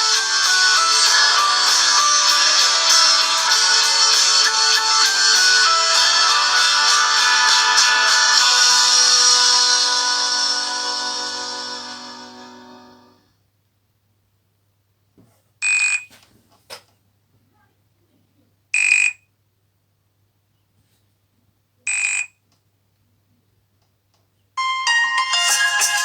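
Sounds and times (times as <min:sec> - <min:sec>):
melodic ringtone: 0:00.0 - 0:13.1, 0:24.6 - 0:26.0.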